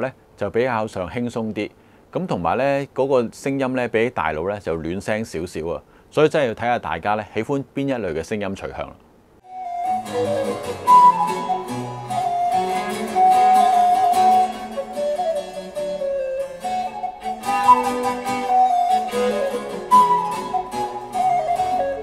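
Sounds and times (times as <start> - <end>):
instrumental music with plucked strings: 9.5 - 22.0.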